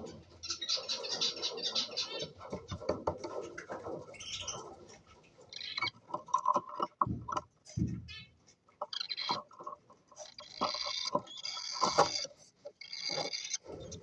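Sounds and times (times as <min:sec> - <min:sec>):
cockatiels chirping: 0:00.4 - 0:04.7, 0:05.4 - 0:06.0, 0:08.0 - 0:14.0
dull thumps: 0:06.1 - 0:08.5.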